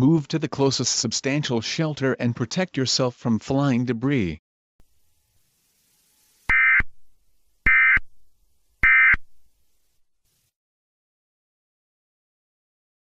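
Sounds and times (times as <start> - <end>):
short data-tone bursts: 5.6 - 6.9, 7.7 - 8.1, 8.8 - 9.3.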